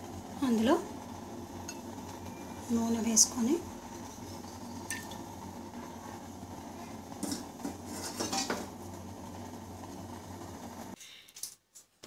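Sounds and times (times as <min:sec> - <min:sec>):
metal utensils clinking on a pan: 0:07.2 - 0:08.7.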